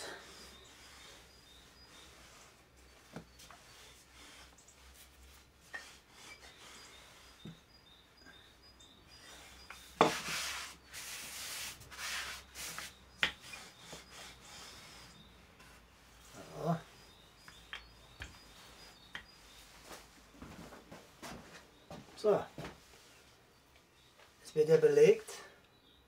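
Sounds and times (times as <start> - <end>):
hands rubbing and scraping dough: 0.2 - 7.8, 9.1 - 20.2.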